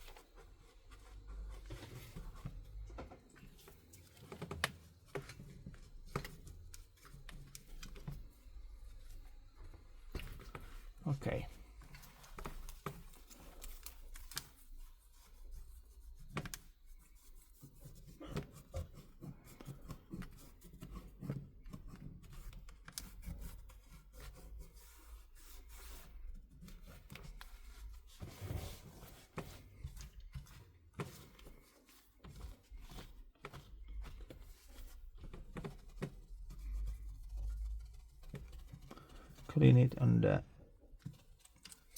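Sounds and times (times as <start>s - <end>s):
small clicks and taps: 2.9s - 8.3s, 11.8s - 14.6s, 41.0s - 41.9s.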